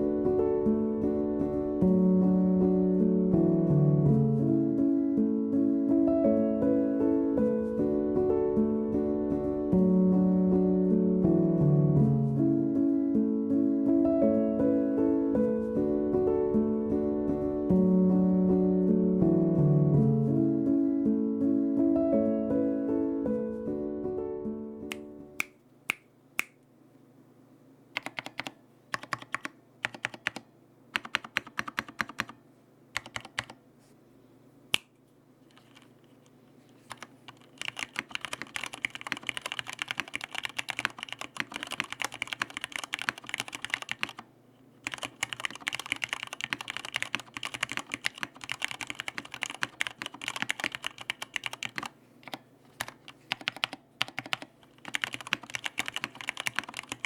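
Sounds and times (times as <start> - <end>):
typing on mechanical keyboard: 28.0 - 32.4, 33.0 - 33.6, 35.5 - 35.9, 36.8 - 57.0.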